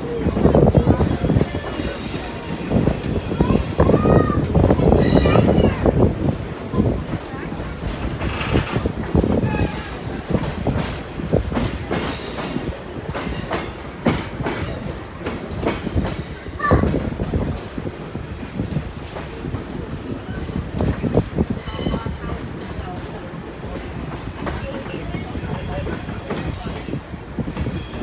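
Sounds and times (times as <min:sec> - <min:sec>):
railcar rumbling: 0:00.0 - 0:28.0
wheels clacking over rail joints: 0:00.6 - 0:17.7.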